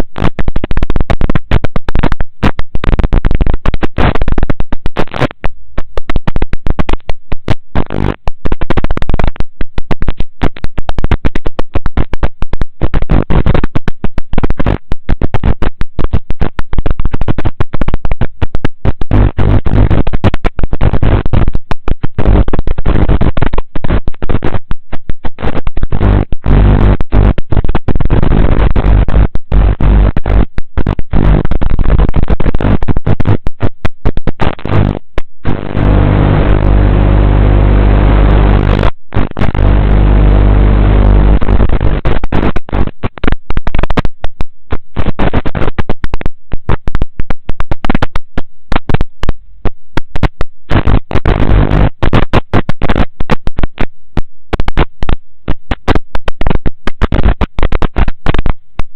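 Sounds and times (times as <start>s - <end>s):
harsh buzzing static: 0.0s - 58.9s
steady low hum: 24.8s - 42.9s.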